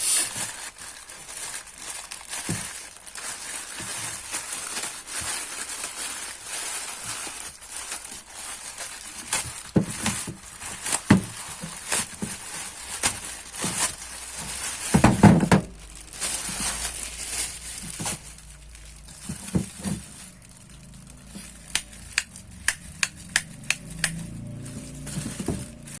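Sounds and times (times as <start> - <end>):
plastic packaging crinkling: 0.0 - 26.0.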